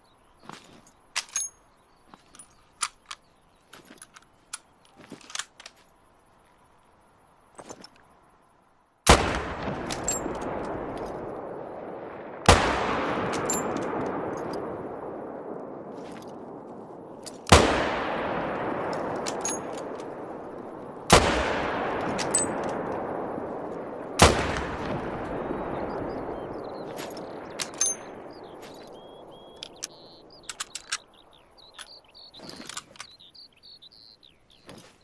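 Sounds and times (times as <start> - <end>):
small metallic clicks: 0.5 - 6.0, 18.9 - 20.1, 29.5 - 33.3
rifle shots with echo: 9.1 - 30.7
faint chirps: 25.3 - 35.0.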